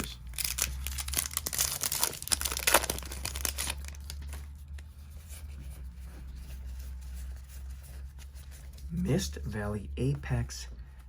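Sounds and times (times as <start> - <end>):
foil wrapper tearing and crinkling: 0.0 - 4.4.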